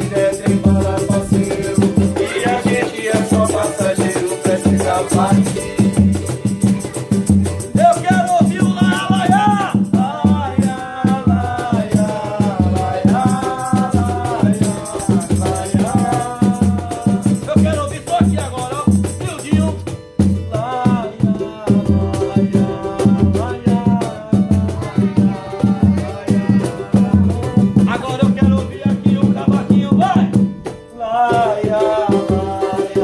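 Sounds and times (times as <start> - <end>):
shaker rattling: 0.0 - 11.0, 11.6 - 19.9
low drum beat: 0.0 - 33.0.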